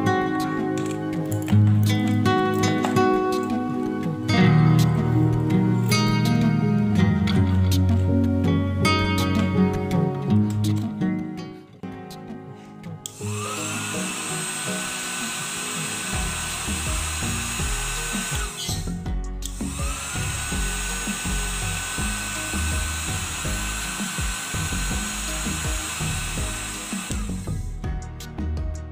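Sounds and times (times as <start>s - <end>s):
background music with a beat: 0.0s - 28.9s
hair dryer blowing: 13.1s - 27.8s.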